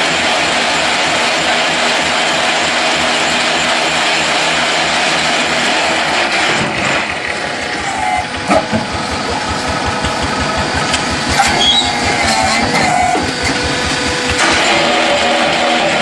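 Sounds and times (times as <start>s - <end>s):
concrete block machine pulsing: 0.0s - 16.0s
sharp knocks: 8.4s - 14.4s.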